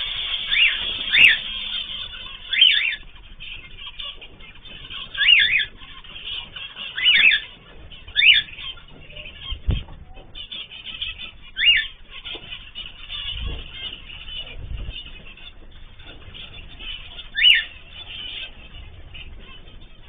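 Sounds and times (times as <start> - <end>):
cage birds chattering: 0.0 - 20.0
dull thump: 7.4 - 11.6.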